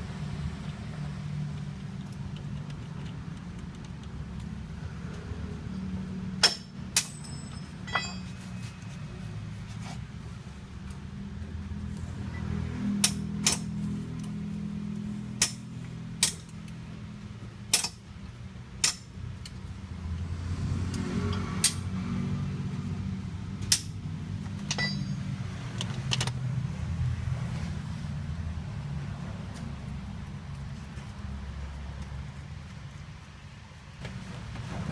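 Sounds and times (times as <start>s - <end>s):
sharp metallic clinks: 6.4s - 8.6s, 24.6s - 25.4s.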